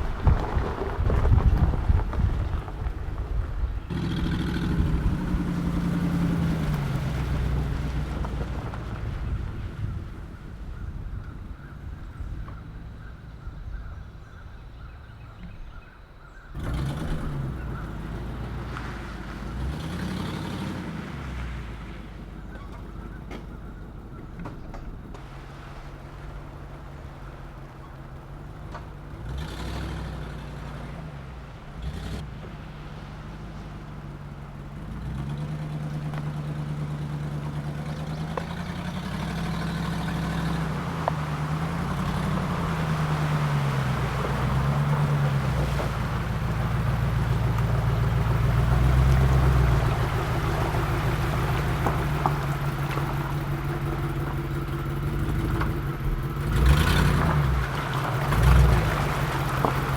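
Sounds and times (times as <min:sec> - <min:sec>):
wind on microphone: 0:00.0 - 0:03.9
car engine running: 0:00.0 - 0:59.9.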